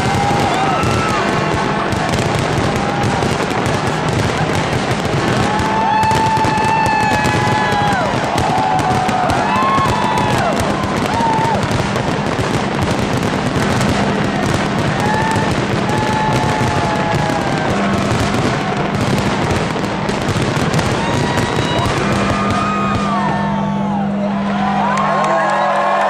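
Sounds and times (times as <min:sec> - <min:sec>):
fireworks crackling and popping: 0:00.0 - 0:24.9.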